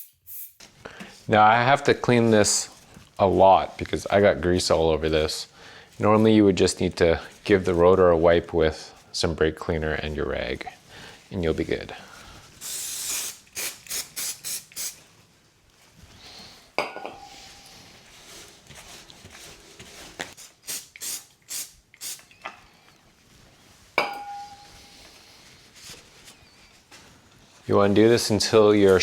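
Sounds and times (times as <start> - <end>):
aerosol spray hissing bursts: 0.0 - 0.6, 12.6 - 15.0, 20.5 - 22.3.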